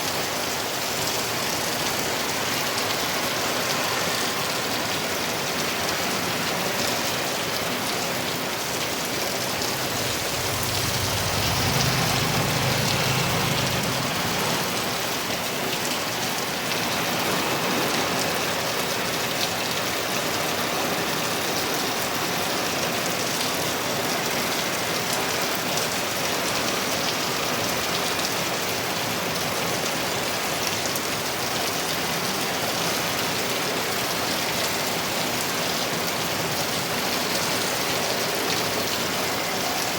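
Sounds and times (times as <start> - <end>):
heavy rain pouring: 0.0 - 39.9
low rumble: 9.4 - 15.3.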